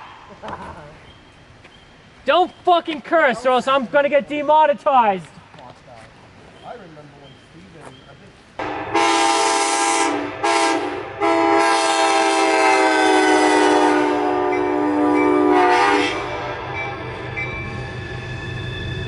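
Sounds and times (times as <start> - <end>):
train running noise: 3.5 - 19.0
locomotive air horn: 8.6 - 17.0.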